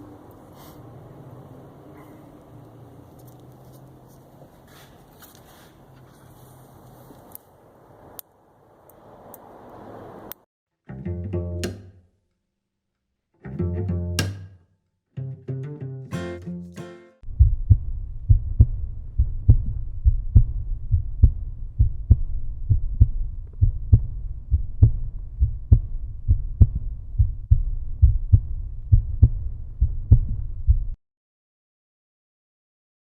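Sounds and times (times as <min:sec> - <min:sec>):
plucked and bowed strings: 0:10.9 - 0:12.1, 0:13.4 - 0:17.2
muffled bass-heavy beat: 0:16.2 - 0:31.0.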